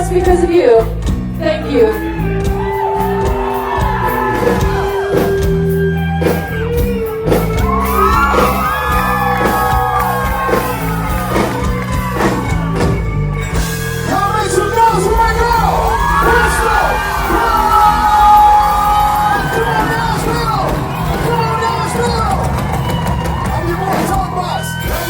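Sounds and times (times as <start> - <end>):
held bass notes: 0.0 - 25.0
live band playing: 0.0 - 25.0
shouts and whoops: 1.8 - 6.0, 7.5 - 13.1, 15.0 - 25.0.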